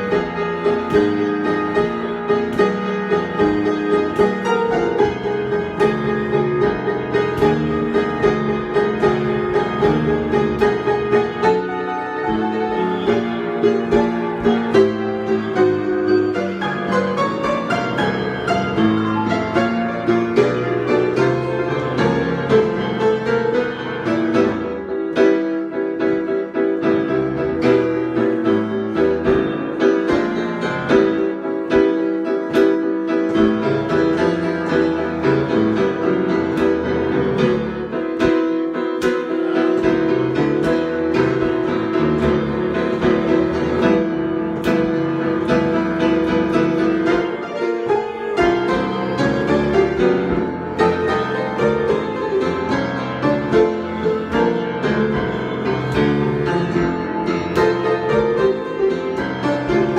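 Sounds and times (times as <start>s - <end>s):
solo piano improvising: 0.0s - 59.9s.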